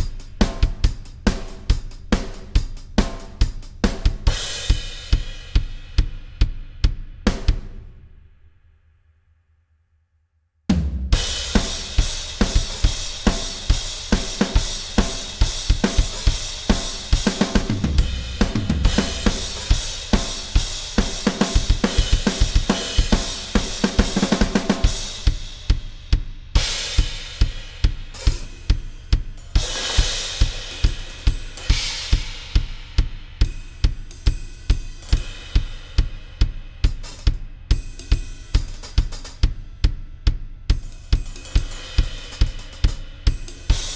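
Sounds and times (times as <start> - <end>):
drum kit beat: 0.0 - 7.8, 10.7 - 43.9
washing cymbals: 11.2 - 25.7.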